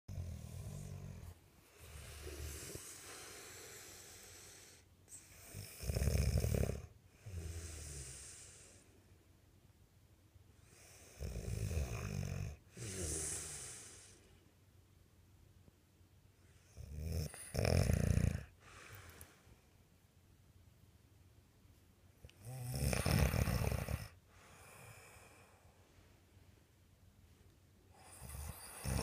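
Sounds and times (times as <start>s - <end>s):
breathy hissing breaths: 0.4s - 5.8s, 7.1s - 9.1s, 12.6s - 14.5s, 18.4s - 19.8s, 23.0s - 26.2s
loud rattling snore: 22.5s - 24.1s, 28.2s - 29.0s.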